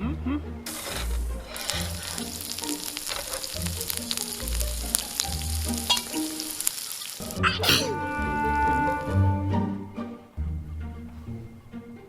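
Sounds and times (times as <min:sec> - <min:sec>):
sizzling crackle with pops: 0:00.7 - 0:07.8.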